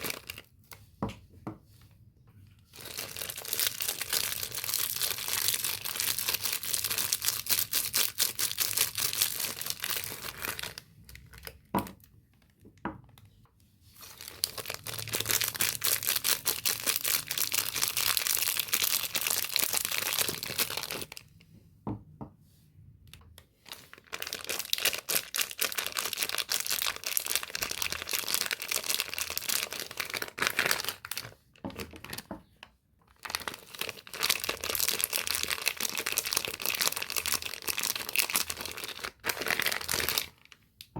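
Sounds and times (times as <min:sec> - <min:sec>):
packaging tearing and crinkling: 0:00.0 - 0:00.5, 0:14.0 - 0:21.2, 0:23.7 - 0:32.3, 0:33.2 - 0:40.5.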